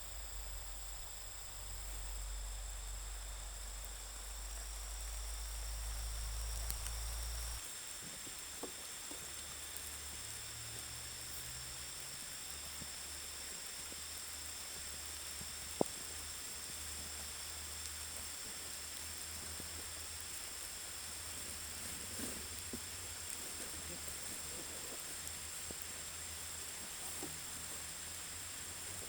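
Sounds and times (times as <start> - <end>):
low hum: 0.0 - 7.6
faint hiss: 0.0 - 29.0
insects chirring: 0.0 - 29.0
faint clicks: 1.6 - 7.6.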